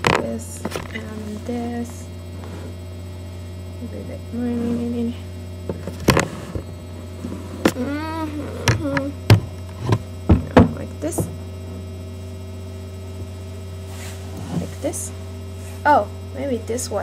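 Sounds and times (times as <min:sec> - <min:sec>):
electrical mains hum: 0:00.0 - 0:17.0
person humming: 0:07.7 - 0:09.4
devices knocking and clicking: 0:08.6 - 0:11.4.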